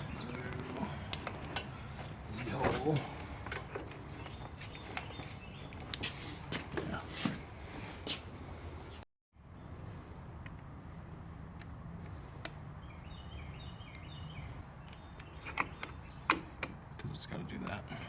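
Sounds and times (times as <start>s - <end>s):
parts clicking and knocking: 14.9s - 16.8s.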